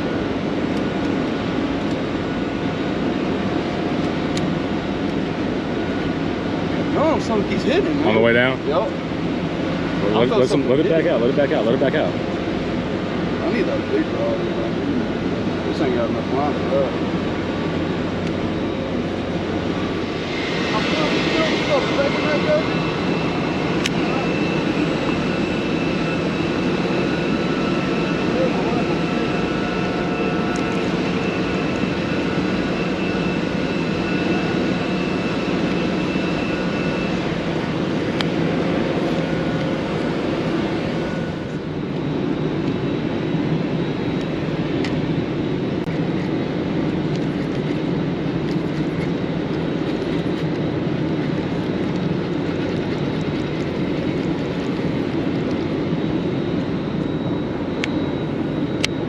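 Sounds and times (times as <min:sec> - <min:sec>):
engine drone: 0:00.0 - 0:59.0
faint whining tones: 0:08.8 - 0:59.0
rushing noise: 0:16.9 - 0:41.7.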